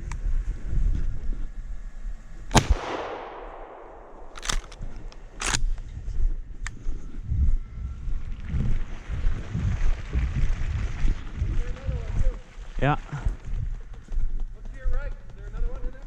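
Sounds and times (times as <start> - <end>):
gunshot echoing: 2.6 - 5.6.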